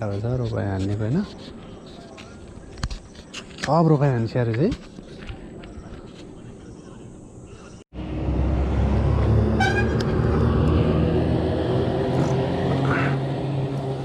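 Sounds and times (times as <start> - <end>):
horn toot: 9.4 - 10.3.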